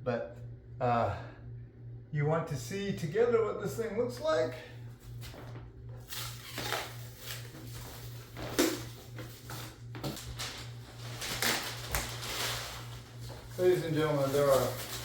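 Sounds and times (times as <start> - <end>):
steady low hum: 0.0 - 15.0
packing material rustling: 5.3 - 15.0.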